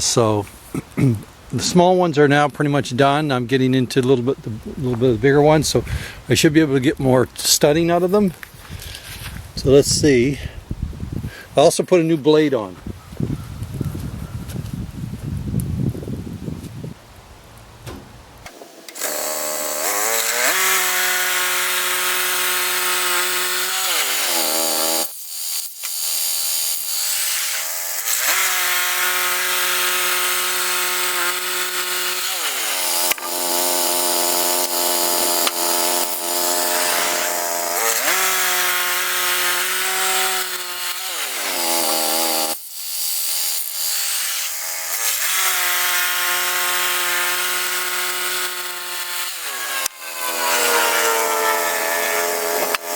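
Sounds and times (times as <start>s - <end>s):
band blade hissing in wood: 23.6s - 28.7s, 32.0s - 45.3s
sawmill gas engine running: 31.8s - 40.2s.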